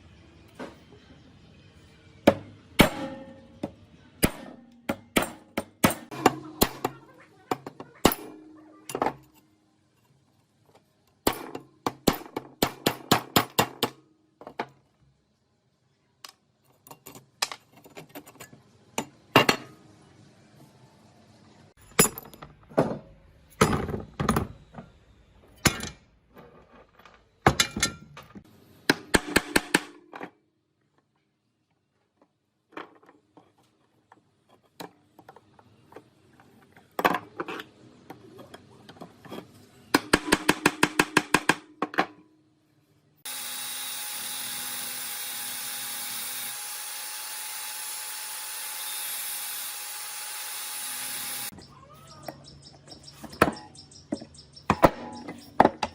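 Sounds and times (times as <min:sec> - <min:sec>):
metal knocks and clinks: 0:21.8 - 0:24.8, 0:26.8 - 0:28.4
power tool running: 0:43.2 - 0:51.5.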